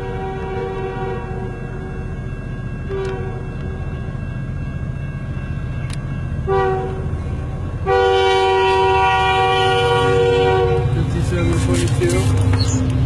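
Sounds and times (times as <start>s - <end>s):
locomotive air horn blasts: 0.0s - 1.5s, 6.5s - 7.1s, 7.8s - 11.0s
diesel locomotive rumble: 0.0s - 13.0s.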